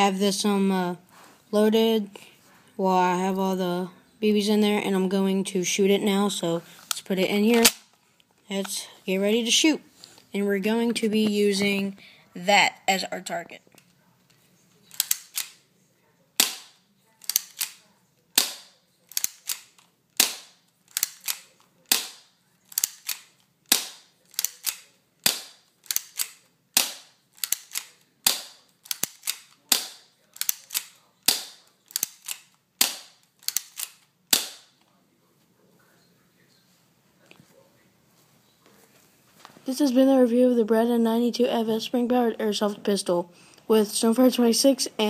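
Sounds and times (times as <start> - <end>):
airsoft pistol firing: 16.4 - 17.8, 18.4 - 19.6, 20.2 - 30.1, 31.3 - 32.2, 32.8 - 34.7.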